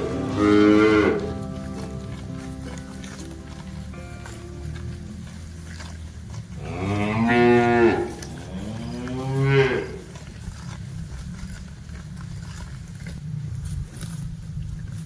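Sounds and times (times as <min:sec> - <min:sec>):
low steady rumble: 0:00.0 - 0:09.2
cattle mooing: 0:00.0 - 0:10.3.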